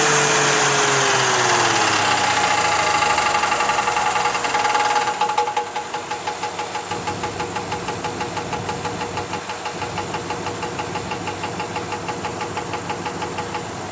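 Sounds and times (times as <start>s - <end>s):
car engine idling with knocking: 0.0s - 13.9s.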